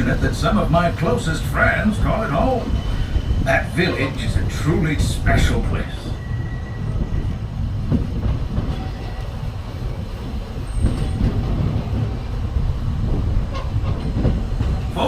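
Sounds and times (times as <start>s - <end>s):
train wheels rumbling: 0.0s - 15.0s
high wheel squeal: 6.1s - 7.4s.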